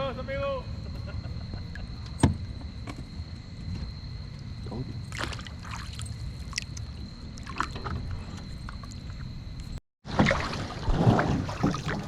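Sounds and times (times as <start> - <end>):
small water splashes: 5.0 - 8.0, 10.0 - 12.0.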